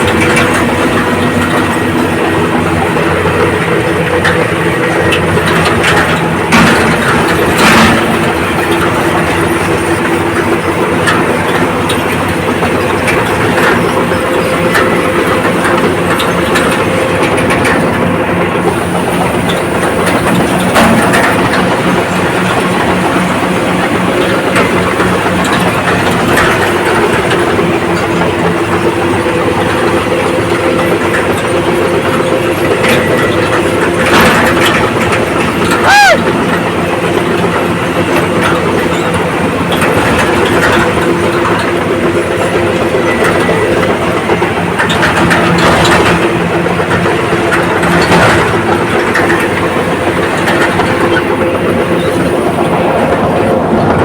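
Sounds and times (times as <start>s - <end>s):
bulldozer diesel engine running: 0.0s - 54.0s
loud metallic knocks: 0.0s - 54.0s
steel tracks clattering: 0.0s - 54.0s.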